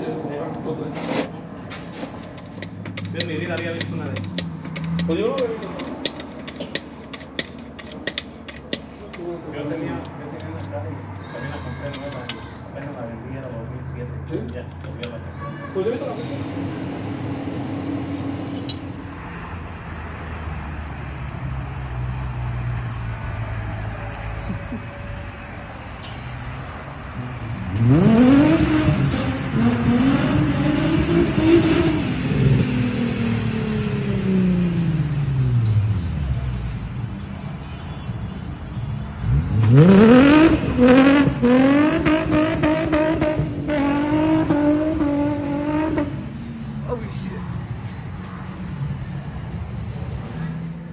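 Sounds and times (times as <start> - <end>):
car engine revving high: 27.7 - 36.1, 39.2 - 46.5.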